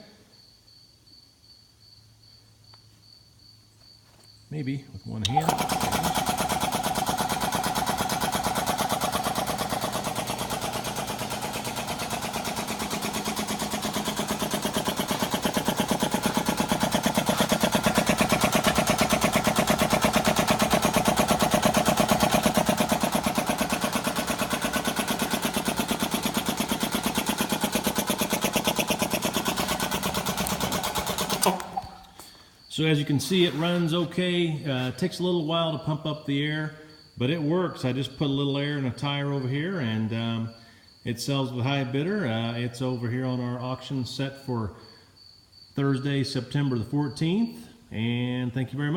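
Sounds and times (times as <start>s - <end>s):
air compressor pumping: 5.2s - 32.5s, 33.2s - 35.2s.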